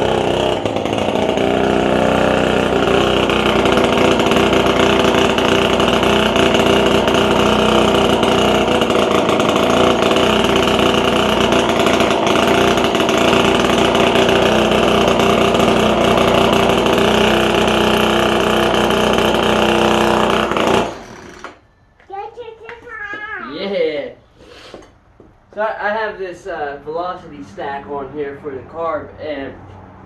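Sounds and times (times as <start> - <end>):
scooter engine buzzing: 0.0 - 21.7.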